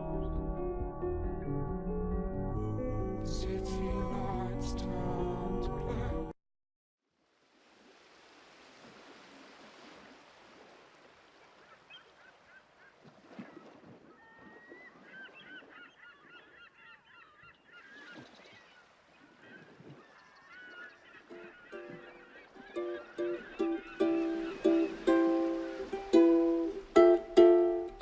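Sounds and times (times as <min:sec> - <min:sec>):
music: 0:00.0 - 0:06.4, 0:21.4 - 0:28.0.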